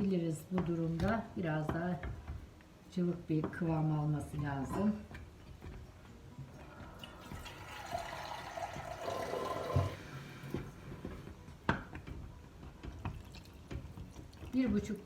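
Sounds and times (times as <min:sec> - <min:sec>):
water pouring into batter: 0:06.9 - 0:10.6.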